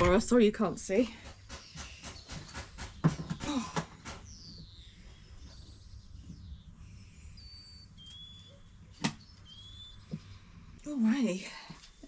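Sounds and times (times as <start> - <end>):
bird whistling calls: 7.3 - 10.3.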